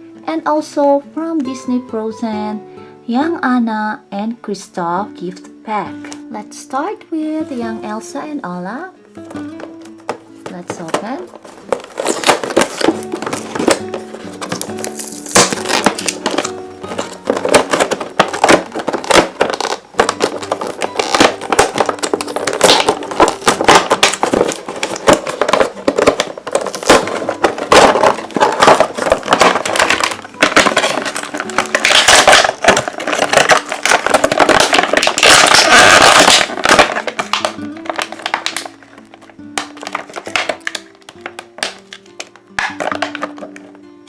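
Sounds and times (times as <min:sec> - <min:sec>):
light background music: 0:00.0 - 0:44.0
toy packaging crackling: 0:09.3 - 0:43.8.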